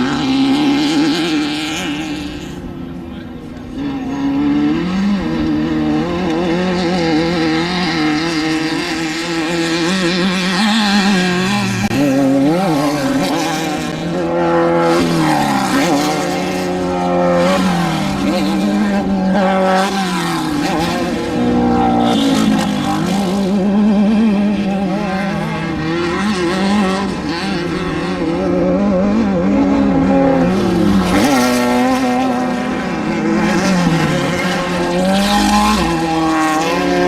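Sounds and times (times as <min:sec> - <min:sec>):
race vehicle engine revving: 0:00.0 - 0:37.0.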